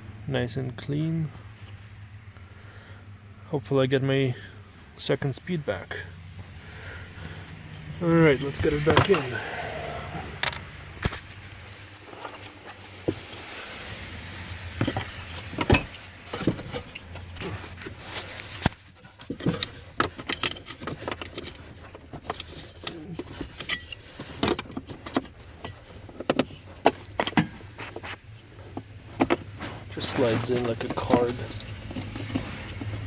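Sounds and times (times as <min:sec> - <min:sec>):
clicks and rattles of hands fitting parts: 0:14.8 - 0:27.7.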